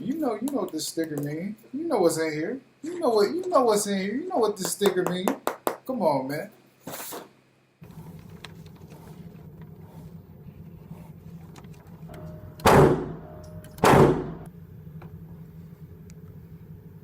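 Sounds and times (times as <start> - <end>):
steady low hum: 0.0 - 17.0
gunshots: 12.6 - 13.2, 13.8 - 14.5.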